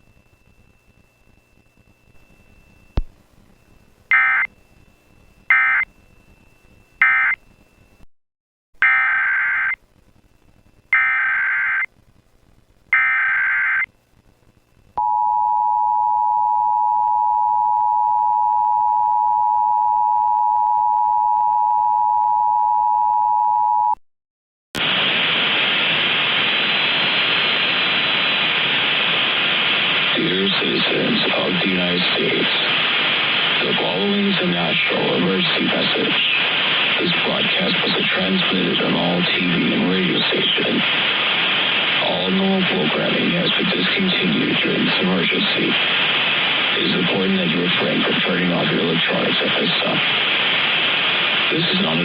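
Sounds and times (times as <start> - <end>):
loud static hiss: 0.0 - 7.5, 8.8 - 15.0, 24.8 - 52.0
digital data bursts: 4.1 - 4.5, 50.8 - 52.0
two-tone attention signal: 4.1 - 4.5, 5.5 - 5.8, 7.0 - 7.4, 8.8 - 9.8.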